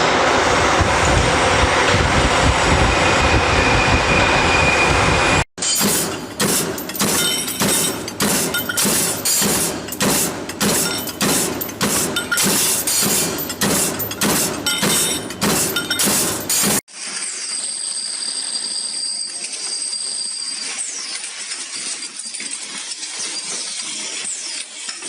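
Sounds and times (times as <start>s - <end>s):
hammer striking hot metal: 5.6s - 16.8s.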